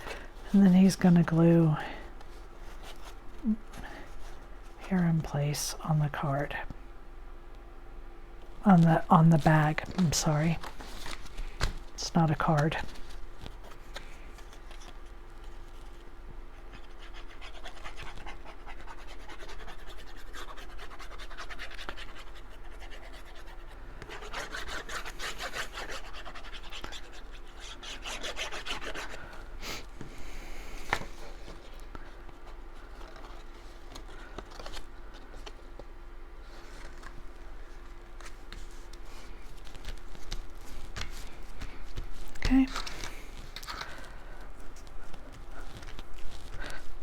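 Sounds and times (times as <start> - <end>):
faint steady hum: 0.0 - 47.0
paper scratching and rubbing: 16.6 - 29.2, 36.4 - 44.0, 44.6 - 46.8.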